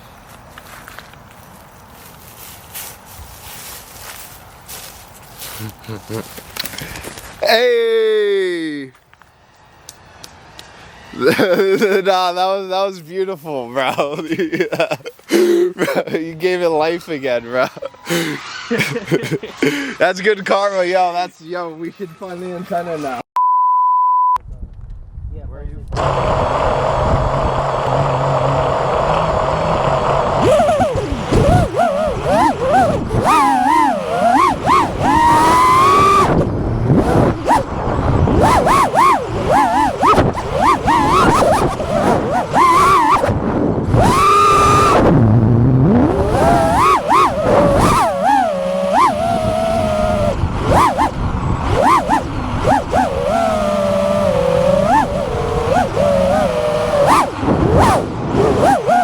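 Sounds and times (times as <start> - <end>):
quadcopter motors whirring: 17.8 - 19.8, 25.9 - 59.0.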